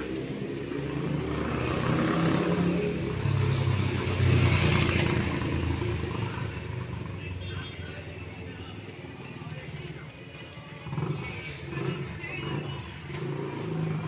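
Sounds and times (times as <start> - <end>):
vehicle engine passing by: 0.0 - 7.3.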